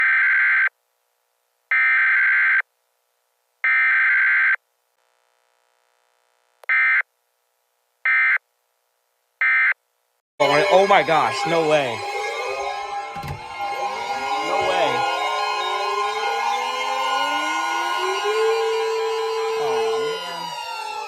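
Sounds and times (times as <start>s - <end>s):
harsh warbling data tone: 10.4s - 21.0s.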